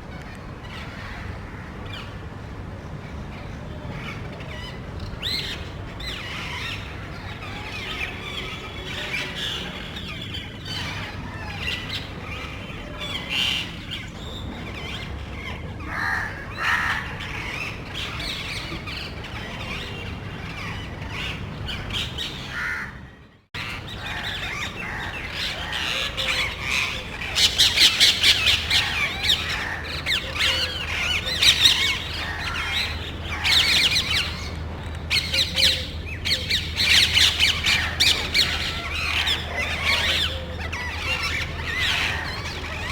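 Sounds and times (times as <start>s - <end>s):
parrots squawking: 23.6s - 42.9s.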